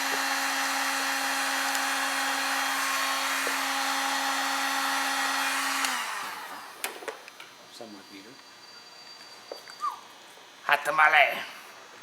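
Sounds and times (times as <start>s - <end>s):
heat gun motor whine: 0.0s - 7.5s.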